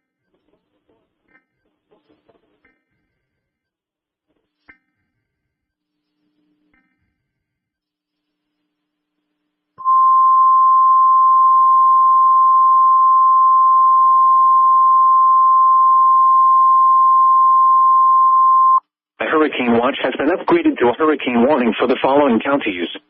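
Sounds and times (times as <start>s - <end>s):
steady loud alarm beep: 9.8s - 18.8s.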